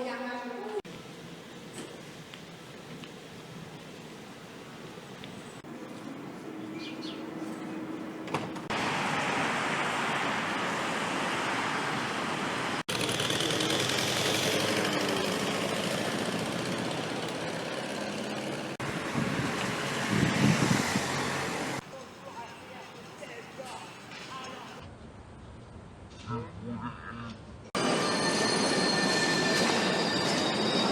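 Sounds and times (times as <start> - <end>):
urban vehicle noise: 0.8 - 28.0.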